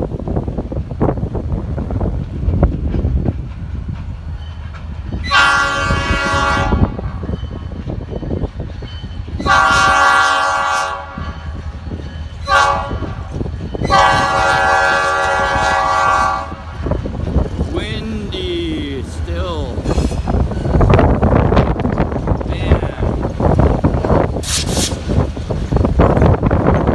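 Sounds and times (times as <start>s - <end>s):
wind buffeting microphone: 0.0s - 26.9s
locomotive air horn blasts: 5.2s - 7.0s, 9.4s - 11.3s, 12.4s - 13.2s, 13.8s - 16.7s.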